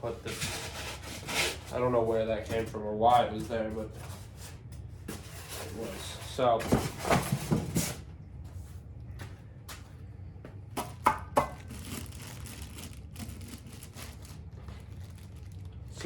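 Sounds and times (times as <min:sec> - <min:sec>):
packaging rustling: 0:11.4 - 0:16.0.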